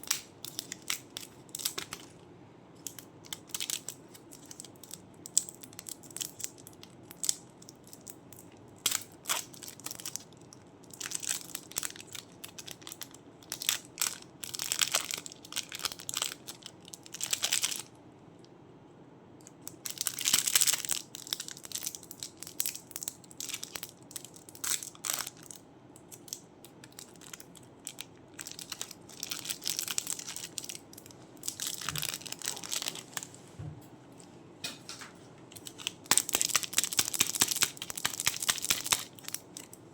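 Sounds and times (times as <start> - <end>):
clay crushed by hand crackling: 35.6 - 39.7.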